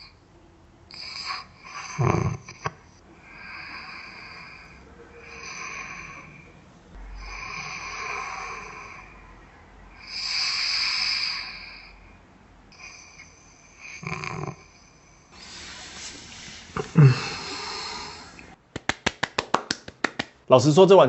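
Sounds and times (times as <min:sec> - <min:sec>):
man breathing loudly: 0:03.2 - 0:06.6, 0:15.3 - 0:18.5.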